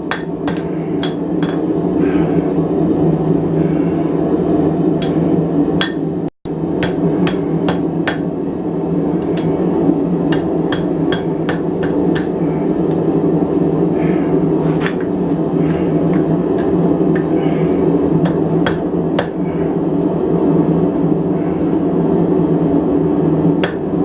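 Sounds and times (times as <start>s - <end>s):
hammer striking steel on anvil: 0.0s - 1.8s, 5.0s - 8.6s, 9.2s - 12.7s, 18.2s - 19.5s, 23.6s - 24.0s
steady low roar: 0.0s - 24.0s.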